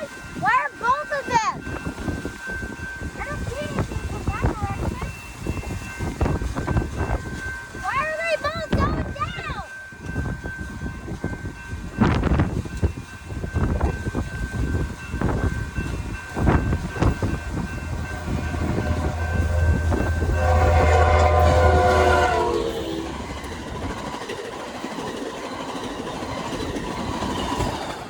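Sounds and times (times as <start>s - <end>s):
train wheels clacking on rails: 0.0s - 28.0s
heavy low engine rumble: 16.0s - 24.1s
train horn chord: 17.2s - 23.4s.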